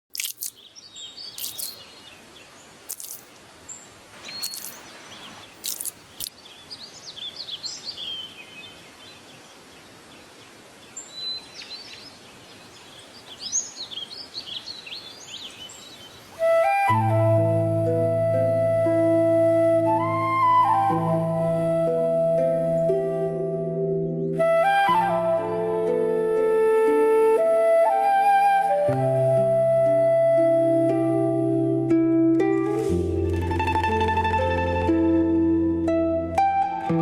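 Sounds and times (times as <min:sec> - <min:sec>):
small birds chirping: 0:00.1 - 0:16.4
outdoor hiss: 0:00.3 - 0:16.6
flute music: 0:16.4 - 0:37.0.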